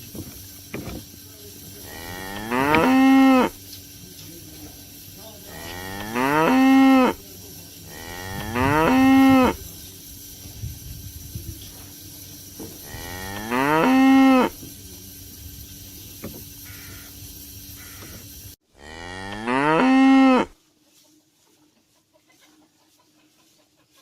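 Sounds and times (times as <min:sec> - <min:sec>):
cow mooing: 0:01.8 - 0:03.6, 0:05.5 - 0:07.2, 0:07.9 - 0:09.6, 0:12.9 - 0:14.6, 0:18.8 - 0:20.6.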